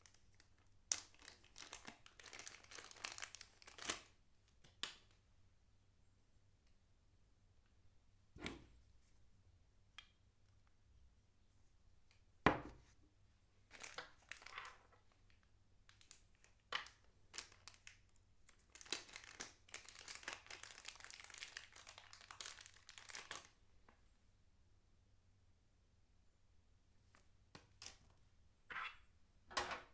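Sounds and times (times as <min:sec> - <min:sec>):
packaging crinkling: 0:00.4 - 0:04.1, 0:13.7 - 0:14.8, 0:18.7 - 0:23.5.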